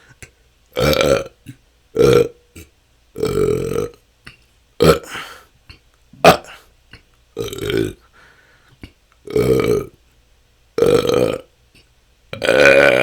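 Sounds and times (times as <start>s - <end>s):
person burping: 0.8s - 4.0s, 4.8s - 5.4s, 6.2s - 6.6s, 7.4s - 8.0s, 8.8s - 10.0s, 10.8s - 11.5s, 12.3s - 13.0s.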